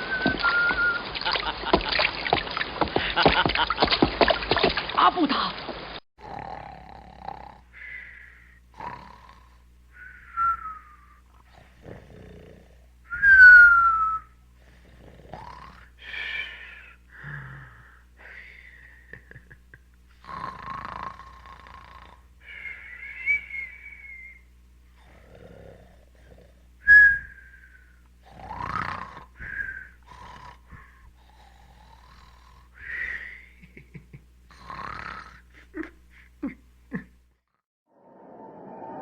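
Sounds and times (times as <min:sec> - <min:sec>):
breathy mouth whistling: 0:00.0 - 0:01.1, 0:09.9 - 0:11.2, 0:13.1 - 0:14.4, 0:22.5 - 0:24.5, 0:26.8 - 0:30.9.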